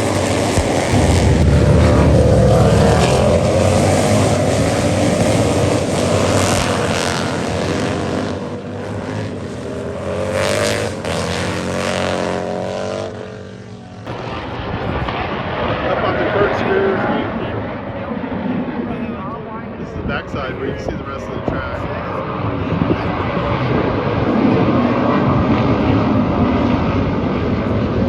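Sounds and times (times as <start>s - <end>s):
racing motorcycles passing: 0.0s - 20.4s.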